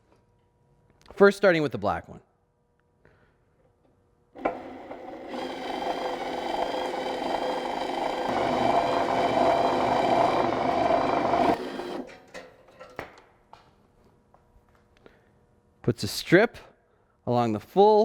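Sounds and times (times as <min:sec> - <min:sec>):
power drill motor running: 0:04.4 - 0:12.1.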